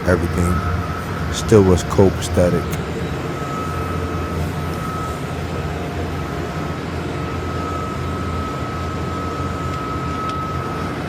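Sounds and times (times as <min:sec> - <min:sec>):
boiler burner rumbling: 0:08.8 - 0:11.0.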